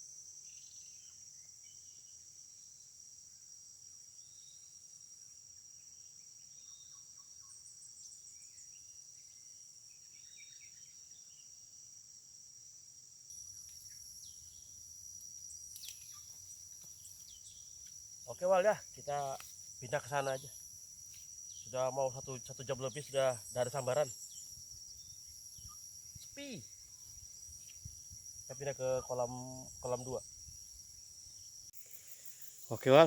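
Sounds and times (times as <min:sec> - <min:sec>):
higher insect drone: 0:04.2 - 0:33.0
faint bird chirps: 0:06.2 - 0:11.6, 0:13.5 - 0:17.9, 0:22.7 - 0:28.0
high-pitched insect drone: 0:13.3 - 0:33.0.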